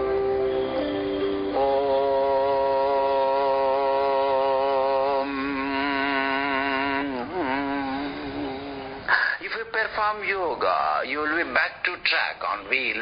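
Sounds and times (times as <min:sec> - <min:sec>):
voice chanting a held note: 0:01.4 - 0:09.2.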